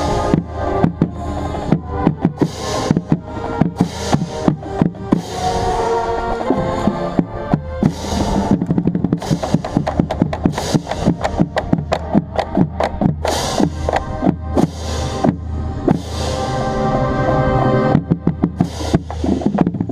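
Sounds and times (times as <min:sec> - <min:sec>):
bass drum strokes: 0:00.0 - 0:19.9
brass and wind chords: 0:00.0 - 0:19.9
cymbal crashes: 0:14.6 - 0:17.8.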